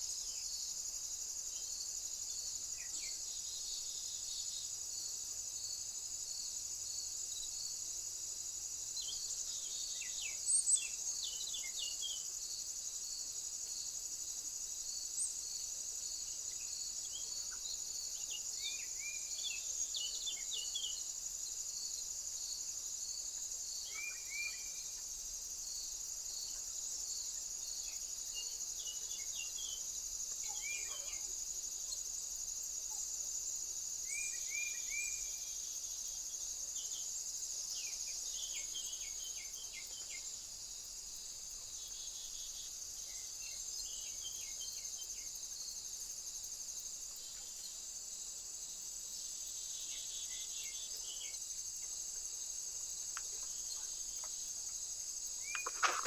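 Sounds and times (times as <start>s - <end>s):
cricket chirping: 0.0s - 56.0s
insect chorus: 0.0s - 56.0s
small birds chirping: 52.8s - 56.0s.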